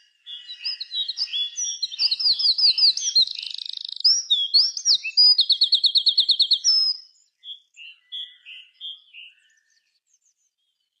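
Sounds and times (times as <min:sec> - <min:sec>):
songbird fast trill: 0:00.0 - 0:07.2
soft low bird chirps: 0:00.0 - 0:11.0.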